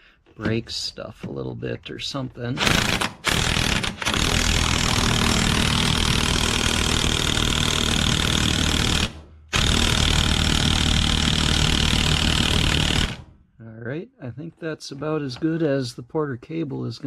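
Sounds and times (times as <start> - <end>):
impact wrench hammering: 2.6 - 13.3.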